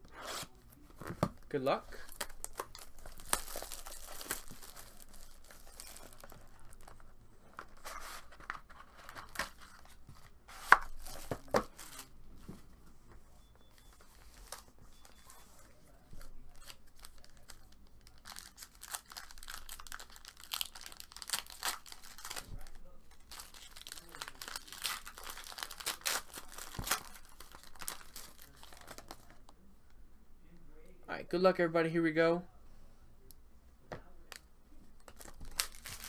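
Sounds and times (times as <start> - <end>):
plastic wrapping tearing and crinkling: 2.0 - 7.0, 16.4 - 29.4, 35.1 - 36.0.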